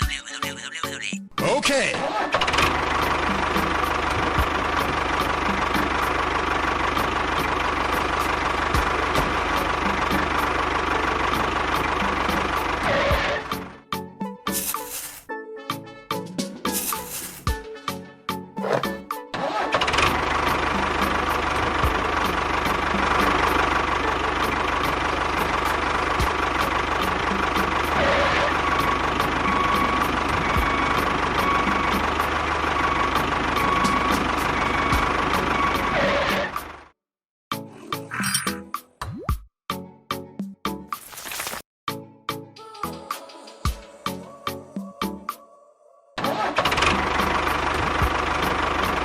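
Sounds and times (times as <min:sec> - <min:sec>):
small engine running: 0:02.2 - 0:13.7, 0:14.5 - 0:15.3, 0:16.7 - 0:17.5, 0:18.6 - 0:36.9, 0:46.2 - 0:49.0.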